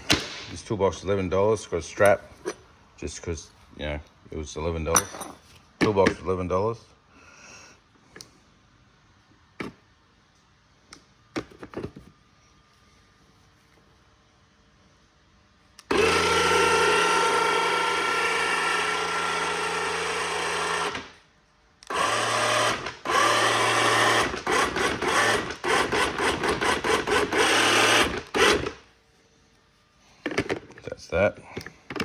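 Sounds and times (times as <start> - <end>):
electric winch motor running: 15.8 - 21.2, 21.8 - 28.8.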